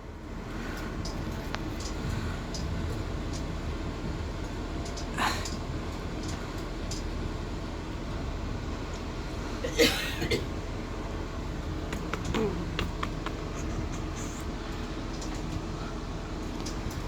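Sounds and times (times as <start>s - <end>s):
train rumbling on track: 0.0s - 17.0s
light clicks and rattles: 0.7s - 3.8s, 4.4s - 7.2s, 11.6s - 17.0s.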